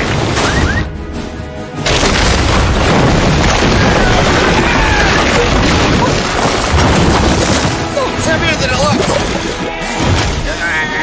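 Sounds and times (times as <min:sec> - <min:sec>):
dramatic background music: 0:00.0 - 0:11.0
loud rumbling booms: 0:01.8 - 0:10.5.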